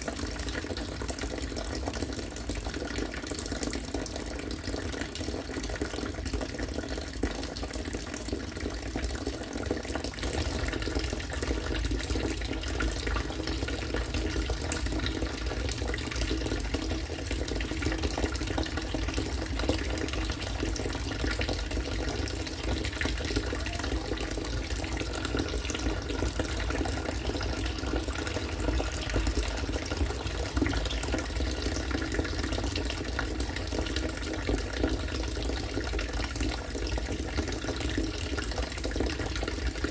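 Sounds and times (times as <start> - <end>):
rainwater pouring and splashing: 0.0 - 39.9.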